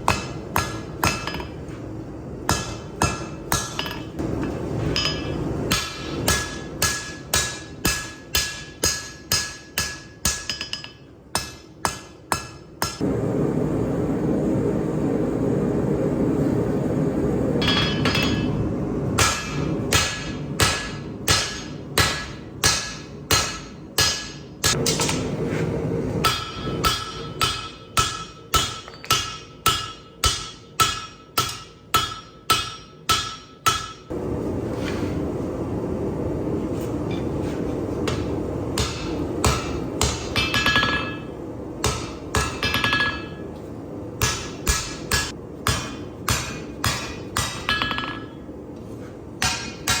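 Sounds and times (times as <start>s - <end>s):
hammer striking steel on anvil: 0.0s - 1.8s, 2.4s - 13.1s, 17.6s - 25.4s, 26.2s - 34.2s, 38.0s - 43.6s, 44.2s - 48.5s, 49.4s - 50.0s.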